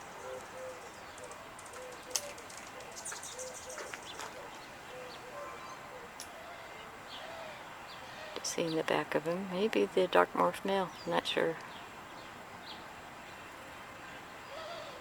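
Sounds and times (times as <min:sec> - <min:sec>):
dove cooing: 0:00.0 - 0:08.5, 0:14.4 - 0:15.0
small birds chirping: 0:00.0 - 0:15.0.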